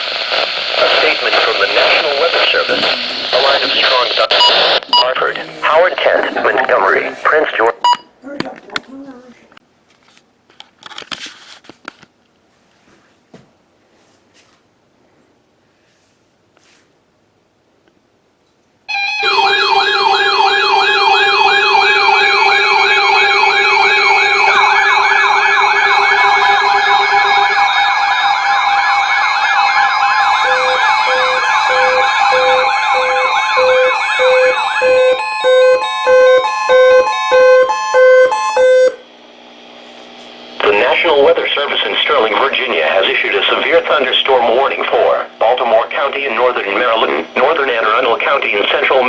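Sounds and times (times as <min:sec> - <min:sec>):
steady alarm tones: 0:00.8 - 0:08.1, 0:18.9 - 0:39.2
regular beeping: 0:02.6 - 0:08.2, 0:18.9 - 0:39.0
electronic siren wails: 0:18.9 - 0:39.1.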